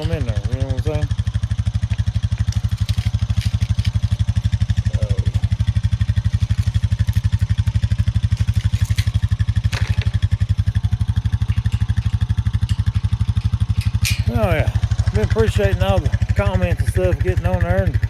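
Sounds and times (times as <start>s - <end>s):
faint clicks and rattles: 0.0s - 18.0s
farm vehicle engine idling: 0.0s - 18.0s.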